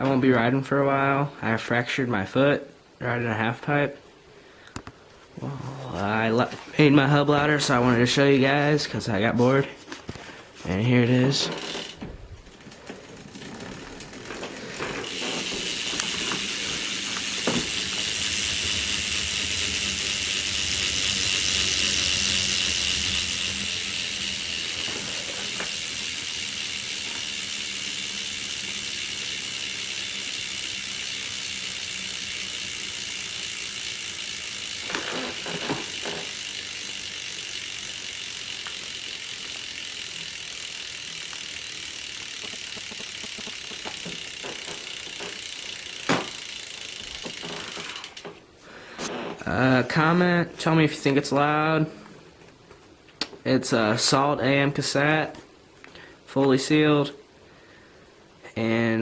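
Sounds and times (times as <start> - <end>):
bicycle hub freewheeling buzz: 11.3 - 48.4.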